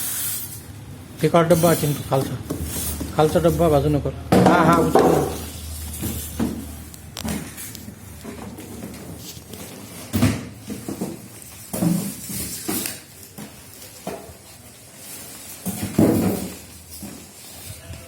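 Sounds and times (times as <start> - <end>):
packaging rustling and scraping: 1.4 - 3.8, 4.8 - 18.0
cardboard boxes thudding: 4.3 - 7.5, 10.0 - 14.4, 15.6 - 17.4.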